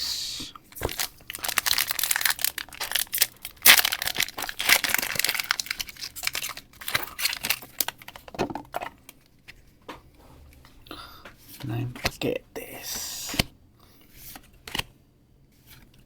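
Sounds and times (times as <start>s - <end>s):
foil wrappers crinkling: 0.7s - 8.3s.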